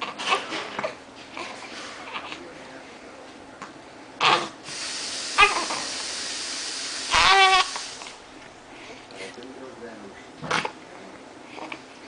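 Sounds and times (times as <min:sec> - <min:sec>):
steady hiss: 0:04.6 - 0:08.2
baby crying: 0:05.4 - 0:05.9, 0:07.1 - 0:07.8.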